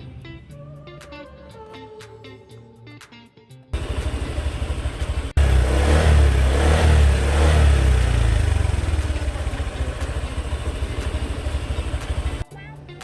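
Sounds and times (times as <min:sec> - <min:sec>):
scooter engine idling and revving: 0:03.8 - 0:12.5.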